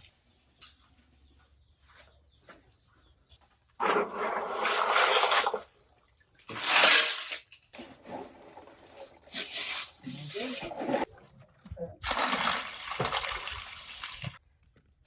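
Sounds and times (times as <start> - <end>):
water splashing in gushes: 12.0 - 14.4.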